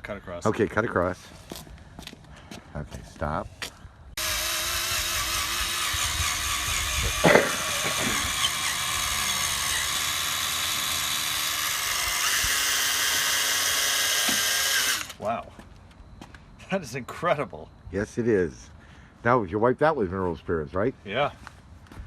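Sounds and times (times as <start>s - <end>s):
cordless drill polishing: 4.2s - 15.2s.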